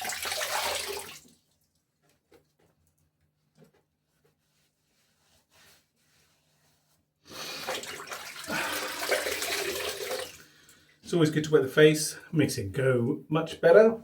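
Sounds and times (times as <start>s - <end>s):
water splashing at a sink: 0.0s - 2.4s, 7.6s - 10.8s.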